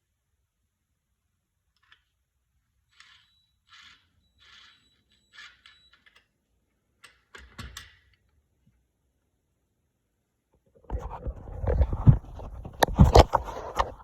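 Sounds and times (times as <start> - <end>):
scraping rustles: 10.8 - 14.0.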